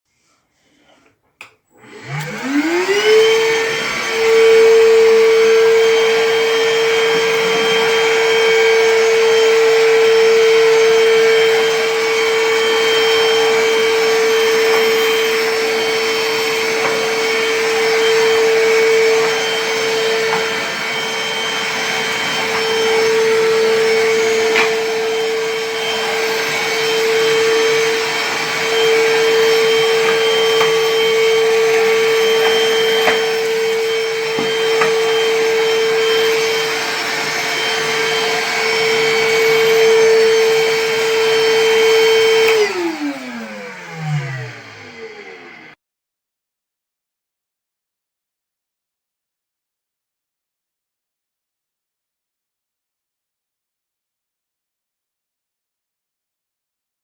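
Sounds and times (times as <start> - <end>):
vacuum motor whine: 1.7 - 45.8.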